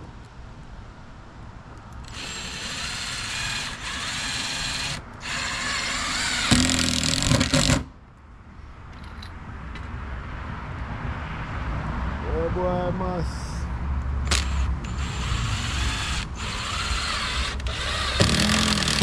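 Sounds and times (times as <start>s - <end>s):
power drill driving screws: 2.0s - 7.9s, 14.2s - 19.0s.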